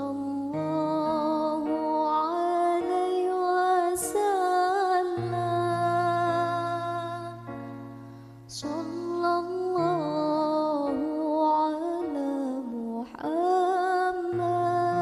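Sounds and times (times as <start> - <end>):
person singing softly: 0.0 - 15.0
singer breathing: 8.0 - 8.5.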